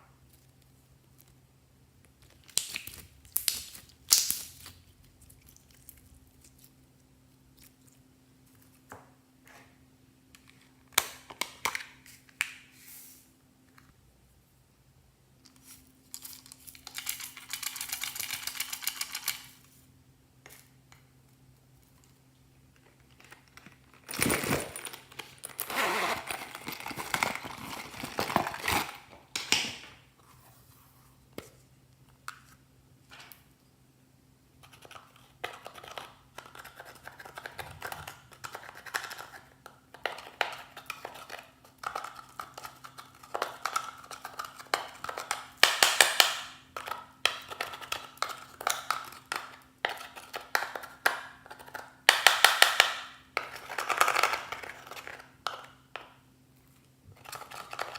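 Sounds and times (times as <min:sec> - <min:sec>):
slime crackling and popping: 0:02.2 - 0:06.6.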